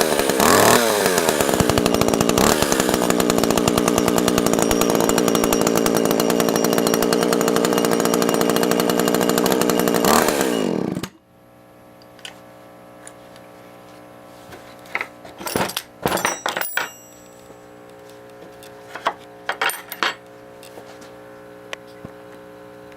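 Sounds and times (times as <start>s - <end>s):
chainsaw engine running: 0.0s - 11.2s
clicks and knocks: 15.0s - 17.3s.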